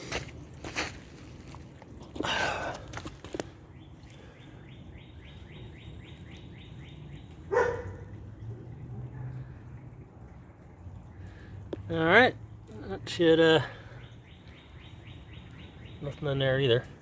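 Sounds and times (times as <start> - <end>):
dog barking: 7.5 - 8.2.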